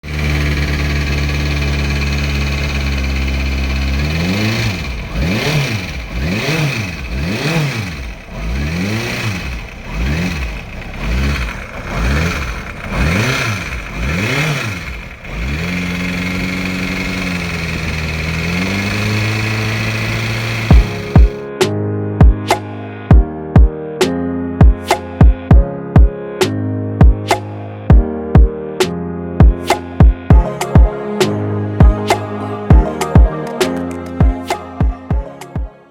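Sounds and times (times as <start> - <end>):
timing chain rattle: 0.0 - 4.7
motorcycle engine idling and revving: 0.0 - 21.5, 29.4 - 35.7.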